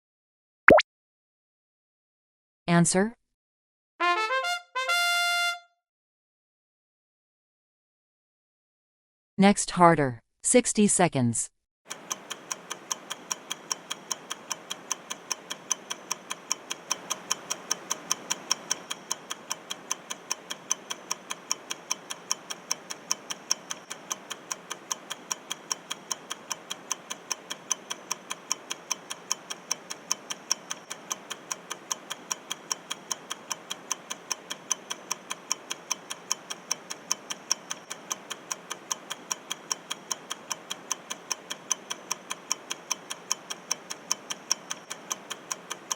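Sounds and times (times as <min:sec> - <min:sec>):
clock ticking: 0:11.9 - 0:45.9.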